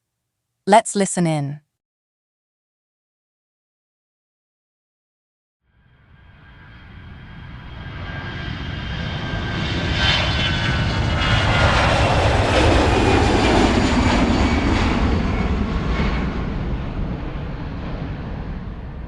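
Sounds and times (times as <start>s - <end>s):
airplane flying past: 5.7s - 19.0s.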